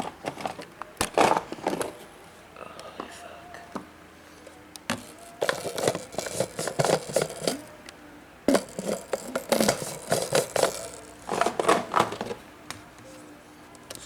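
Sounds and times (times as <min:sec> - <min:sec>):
coffee maker parts clattering: 0:04.9 - 0:07.7, 0:08.5 - 0:12.4.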